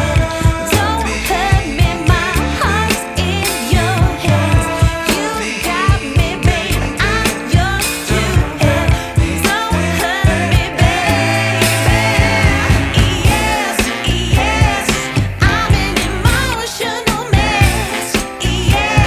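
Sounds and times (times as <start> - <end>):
steady bass beat: 0.0 - 5.2, 5.9 - 19.0
person singing: 0.0 - 19.0.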